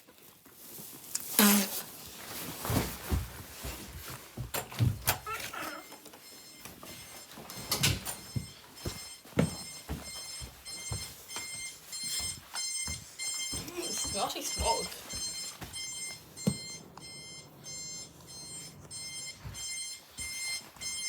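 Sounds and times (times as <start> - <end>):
high pulsing electronic alarm beep: 6.2 - 21.0.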